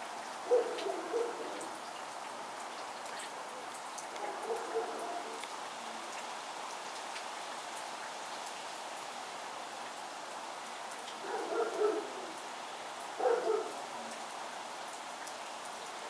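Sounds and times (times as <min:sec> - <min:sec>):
wet snow falling on surfaces: 0:00.0 - 0:16.0
dog barking: 0:00.4 - 0:01.7, 0:04.1 - 0:05.5, 0:11.2 - 0:12.3, 0:13.2 - 0:13.8.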